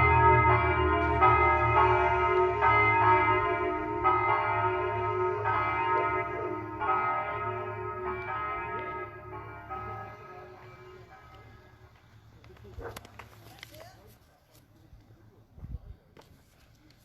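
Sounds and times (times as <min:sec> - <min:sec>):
church bells ringing: 0:00.0 - 0:12.0.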